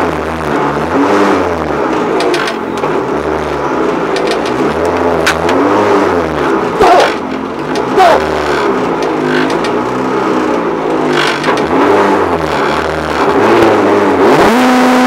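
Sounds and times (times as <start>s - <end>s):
car engine revving: 0.0s - 15.0s.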